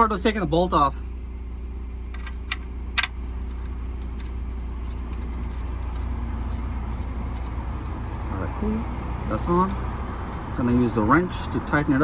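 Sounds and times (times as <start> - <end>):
low mechanical hum: 0.0 - 12.0
sharp metallic clicks: 2.2 - 8.3.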